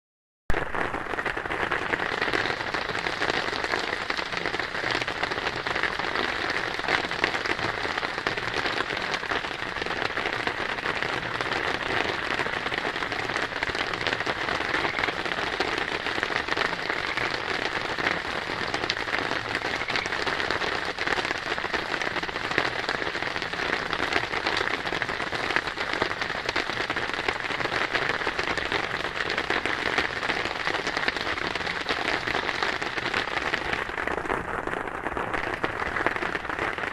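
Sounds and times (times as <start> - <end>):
steady rain patter: 0.5 - 36.9.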